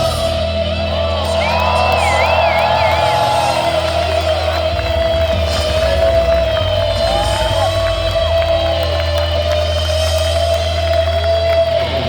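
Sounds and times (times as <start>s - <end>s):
live rock band music: 0.0s - 12.0s
low bass drone: 0.0s - 12.0s
crowd shouting: 0.5s - 9.9s.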